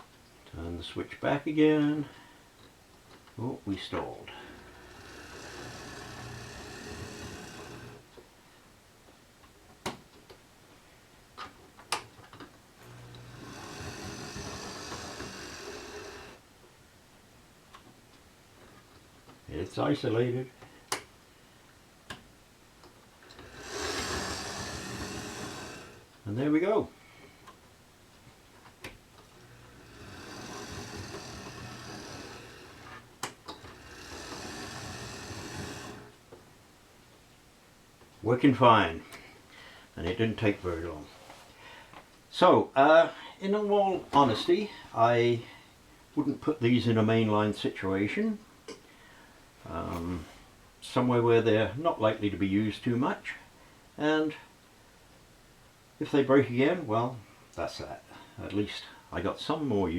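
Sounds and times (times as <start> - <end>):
model train motor humming: 4.3 - 8.0, 12.8 - 16.4, 23.3 - 26.1, 29.4 - 36.2.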